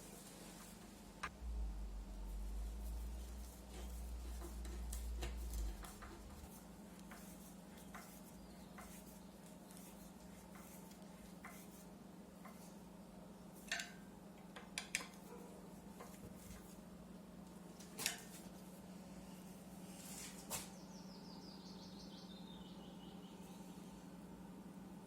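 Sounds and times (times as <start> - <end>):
steady low hum: 0.0 - 25.0
low rumble: 1.3 - 4.3.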